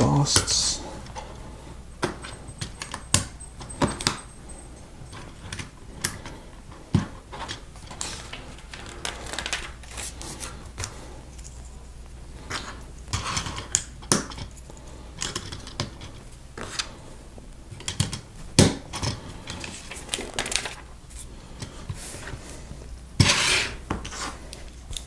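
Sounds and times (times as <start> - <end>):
rustling scrape: 7.3 - 13.6, 19.2 - 24.9.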